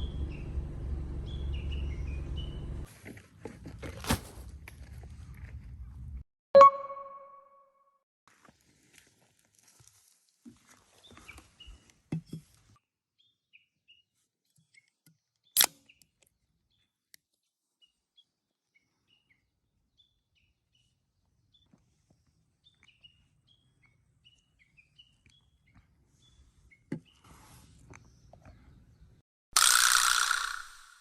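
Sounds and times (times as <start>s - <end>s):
small birds chirping: 1.2s - 2.8s, 13.2s - 29.2s
sharp loud click: 29.6s - 31.0s.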